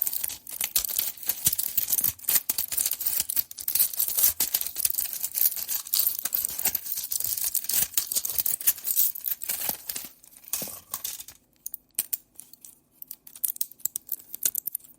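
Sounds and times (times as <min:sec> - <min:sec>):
pills rattling and clicking: 0:00.1 - 0:11.4.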